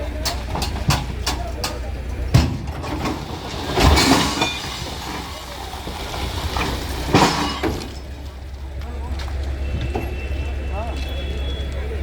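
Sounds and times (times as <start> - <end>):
metal clanks and bangs: 0.0 - 8.5
heavy engine humming: 0.0 - 12.0.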